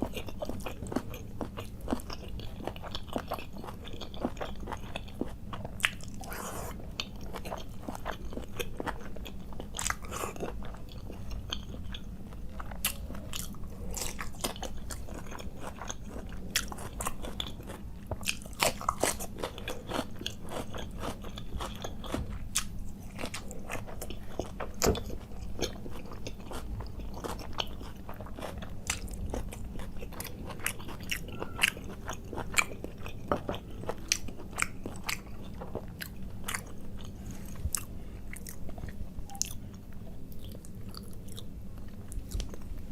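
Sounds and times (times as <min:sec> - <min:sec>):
chewing and biting food: 0:00.0 - 0:42.9
faint low hum: 0:00.0 - 0:42.9.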